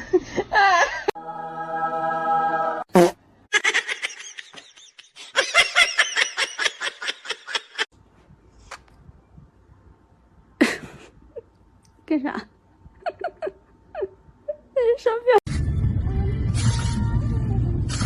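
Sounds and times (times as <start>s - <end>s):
laughter in quick bursts: 3.5s - 7.9s, 13.0s - 14.6s.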